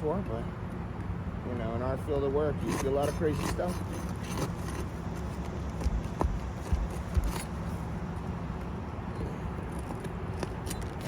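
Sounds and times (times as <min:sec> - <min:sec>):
knocks and scrapes on roof shingles: 0:02.6 - 0:07.8
sharp taps: 0:05.4 - 0:07.5.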